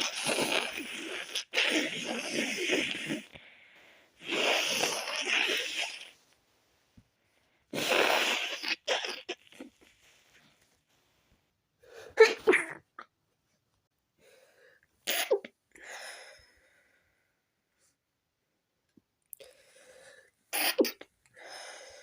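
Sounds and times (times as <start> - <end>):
woman's stifled sneezes: 12.2 - 12.8.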